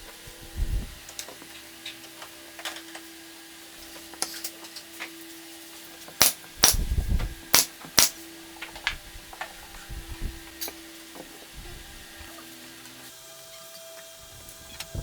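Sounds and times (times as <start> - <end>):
steady low hum: 6.2 - 10.6.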